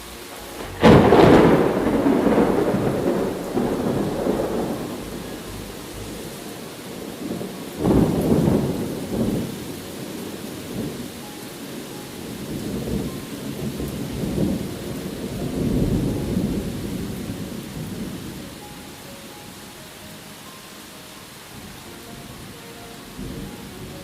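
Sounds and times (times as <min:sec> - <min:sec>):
thunder rumbling: 0:00.0 - 0:18.7
rain hissing: 0:00.0 - 0:24.0.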